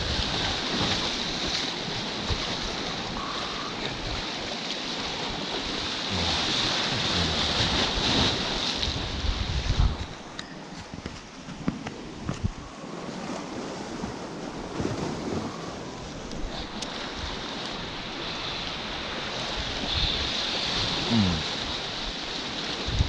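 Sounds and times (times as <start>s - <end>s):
waves washing on rocky shore: 0.0s - 10.4s, 11.4s - 23.0s
wind on microphone: 5.2s - 22.1s, 22.7s - 23.0s.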